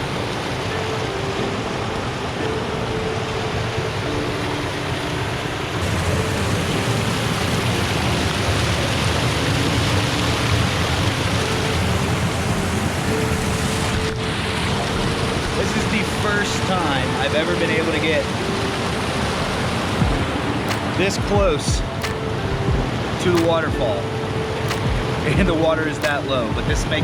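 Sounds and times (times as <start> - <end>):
waterfall rushing: 0.0 - 27.0.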